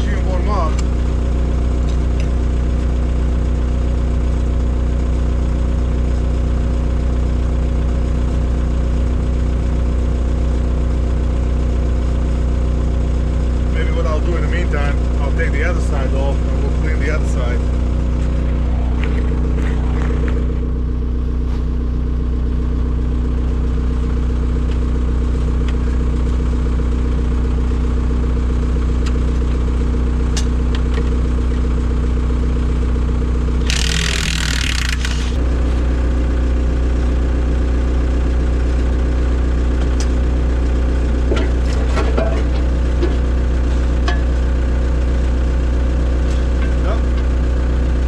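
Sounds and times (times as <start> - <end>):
diesel engine idling: 0.0 - 30.3.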